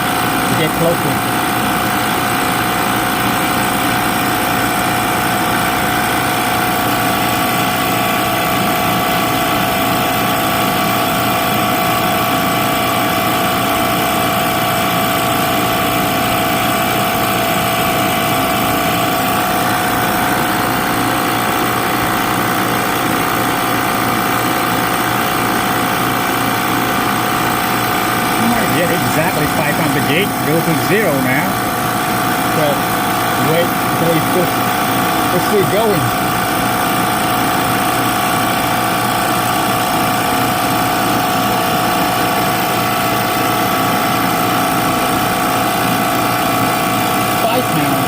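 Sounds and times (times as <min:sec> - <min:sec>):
motor and compressor hum: 0:00.0 - 0:48.0.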